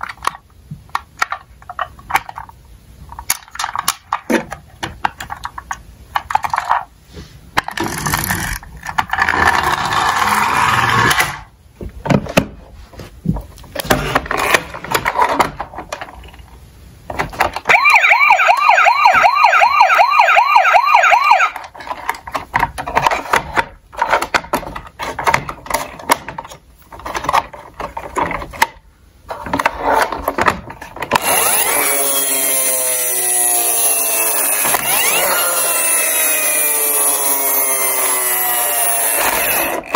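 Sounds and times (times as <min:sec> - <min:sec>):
toy cars clattering down slope: 0:00.0 - 0:06.9, 0:07.5 - 0:11.5, 0:21.5 - 0:39.9
toy electronic siren wailing: 0:17.7 - 0:21.6, 0:31.3 - 0:39.7.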